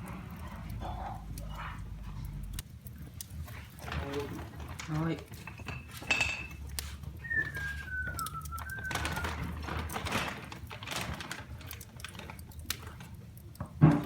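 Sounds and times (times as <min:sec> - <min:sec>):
wood fire crackling and popping: 0:00.0 - 0:14.0
thin falling whistle: 0:07.2 - 0:09.5.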